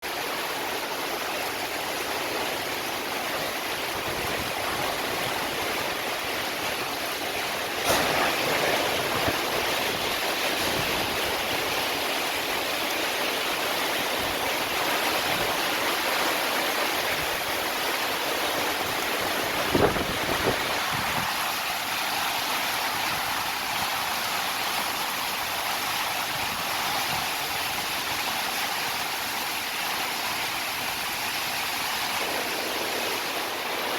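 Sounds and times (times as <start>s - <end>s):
heavy rain pouring: 0.0s - 33.9s
sharp knock: 7.8s - 8.4s.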